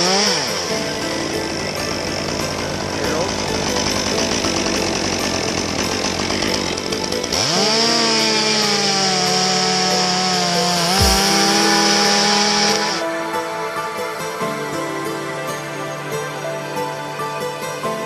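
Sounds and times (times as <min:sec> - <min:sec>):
chainsaw revving: 0:00.0 - 0:13.1
background music: 0:00.0 - 0:18.0.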